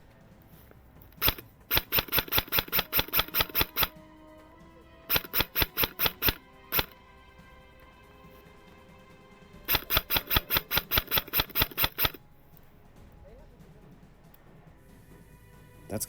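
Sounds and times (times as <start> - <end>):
rapid percussive hits: 1.0 - 3.9, 5.1 - 7.0, 9.7 - 12.2.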